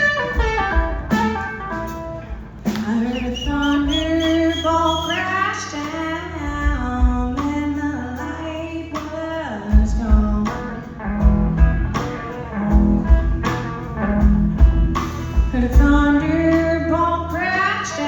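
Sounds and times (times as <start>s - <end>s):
blues-rock band playing: 0.0s - 18.0s
woman singing with vibrato: 2.8s - 11.1s, 15.5s - 18.0s.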